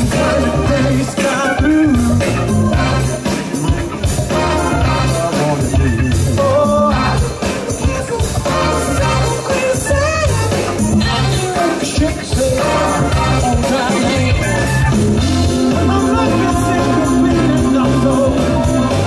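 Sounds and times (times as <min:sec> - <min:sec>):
person singing: 0:00.0 - 0:03.7, 0:04.4 - 0:19.0
live soul band playing: 0:00.0 - 0:19.0.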